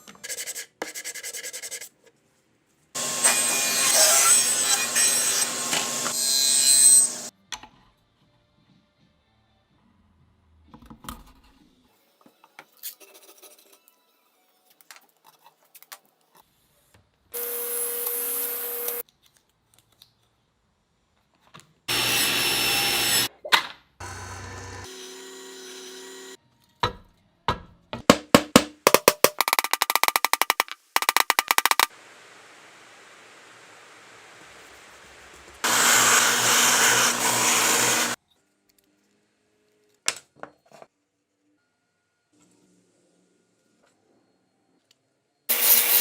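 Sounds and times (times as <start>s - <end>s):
power tool running: 3.0s - 7.3s, 17.4s - 19.0s, 21.9s - 23.3s, 24.0s - 26.4s, 35.6s - 38.2s, 45.5s - 46.0s.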